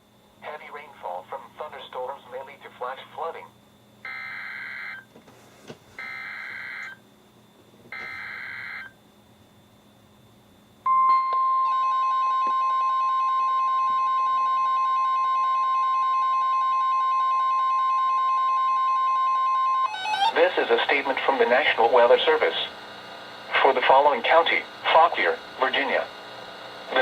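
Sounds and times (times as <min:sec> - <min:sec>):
loud steady alert tone: 0:19.8 - 0:21.8.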